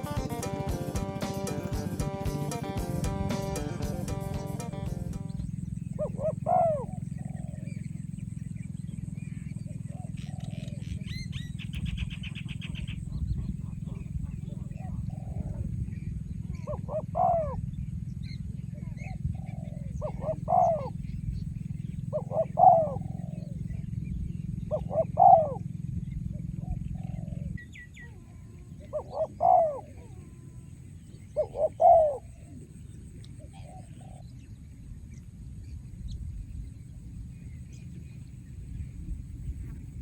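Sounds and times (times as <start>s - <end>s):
dove cooing: 0.0s - 8.2s, 9.2s - 34.5s.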